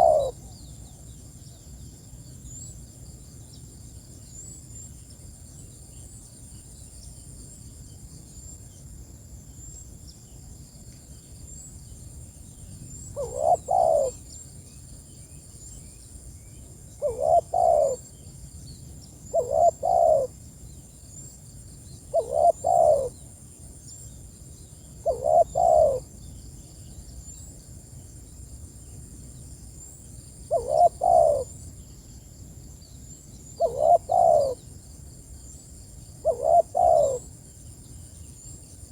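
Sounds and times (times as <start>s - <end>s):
dove cooing: 0.0s - 0.5s, 13.2s - 14.2s, 17.0s - 18.1s, 19.3s - 20.3s, 22.1s - 23.2s, 25.0s - 26.1s, 30.5s - 31.5s, 33.6s - 34.6s, 36.2s - 37.3s.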